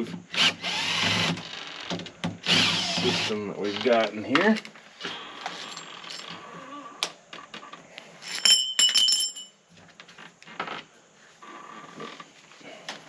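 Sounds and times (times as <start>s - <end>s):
metal parts clinking: 5.5s - 6.4s, 8.2s - 9.6s.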